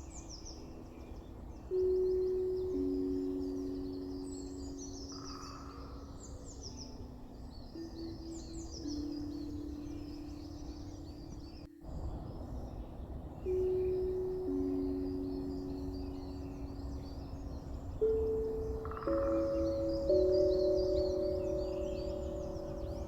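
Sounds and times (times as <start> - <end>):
bird song chirps: 0.0 - 23.0
tongue drum notes ringing: 13.4 - 23.0.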